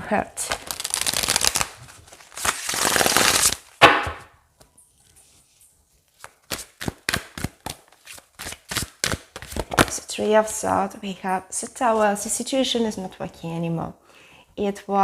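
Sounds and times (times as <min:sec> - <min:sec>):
cards riffle shuffling: 0:00.6 - 0:03.7, 0:06.1 - 0:10.0.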